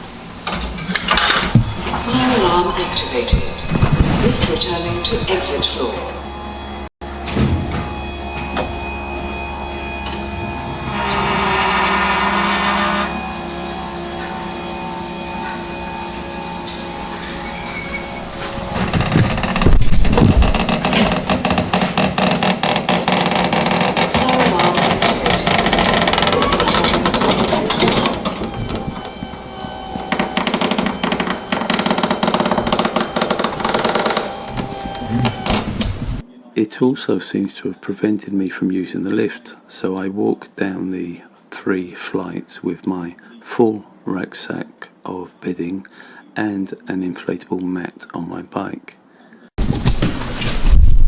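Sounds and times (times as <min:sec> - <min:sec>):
steady mechanical hum: 0:00.0 - 0:50.8
fire alarm bell ringing: 0:01.2 - 0:18.7, 0:25.0 - 0:34.9.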